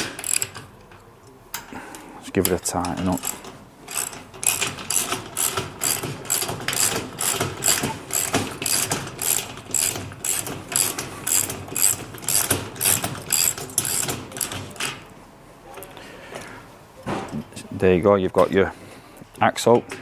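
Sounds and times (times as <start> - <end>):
socket ratchet clicking: 0.0 - 0.6, 3.0 - 14.9.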